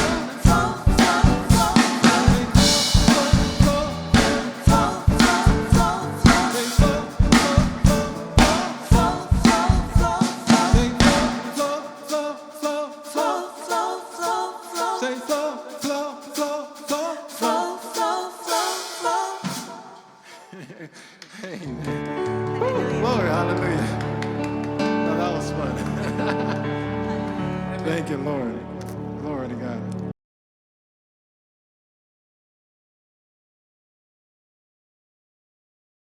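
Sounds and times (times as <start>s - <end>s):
drum kit beat: 0.0s - 19.8s
worship band and singers: 0.0s - 29.2s.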